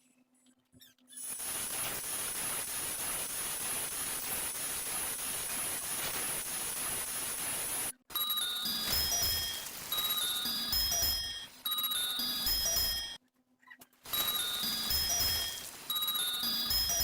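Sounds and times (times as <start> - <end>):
static hiss: 1.2 - 11.3, 14.1 - 17.0
high steady whine: 1.3 - 11.4, 14.1 - 17.0
short electronic beeps: 8.1 - 13.2, 14.1 - 17.0.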